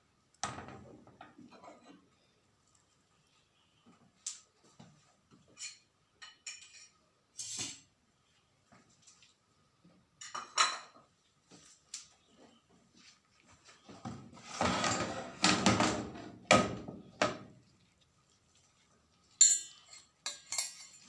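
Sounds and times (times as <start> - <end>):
pots and metal utensils clinking: 5.5 - 7.9, 10.2 - 11.0, 14.4 - 17.5, 19.3 - 21.0.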